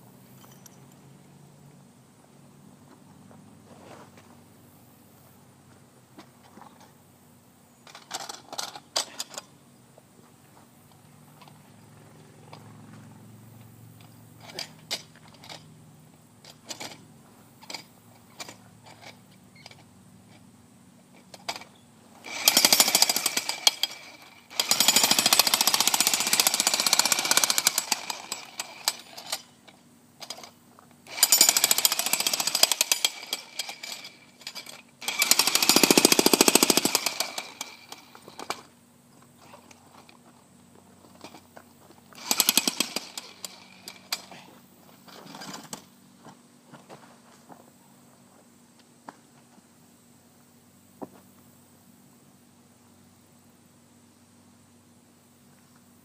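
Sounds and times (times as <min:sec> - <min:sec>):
jackhammer hammering: 0:22.2 - 0:29.5, 0:31.1 - 0:38.7, 0:42.2 - 0:44.4.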